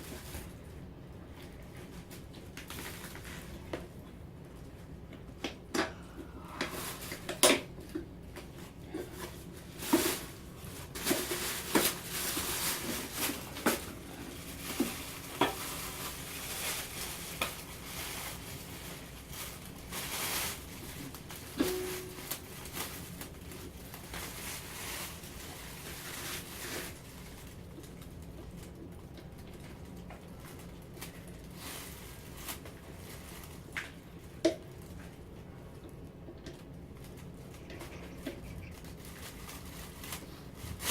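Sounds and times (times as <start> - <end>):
packaging rustling: 6.7 - 29.0, 37.0 - 40.9.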